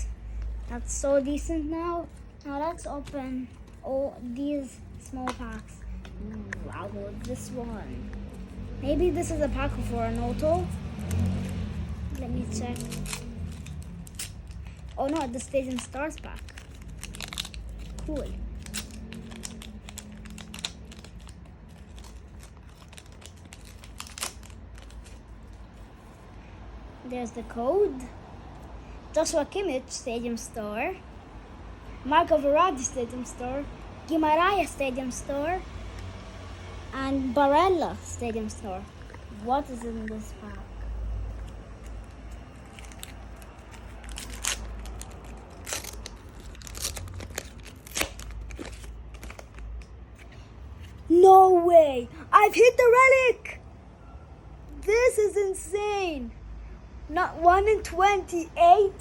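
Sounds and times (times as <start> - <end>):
foil pack crinkling: 12.2 - 25.6, 41.8 - 49.8.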